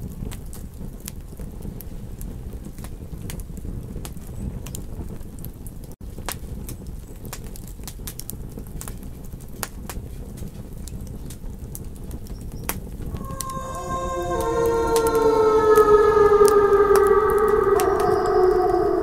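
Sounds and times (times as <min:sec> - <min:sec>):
long wavering howls: 0:13.1 - 0:19.0.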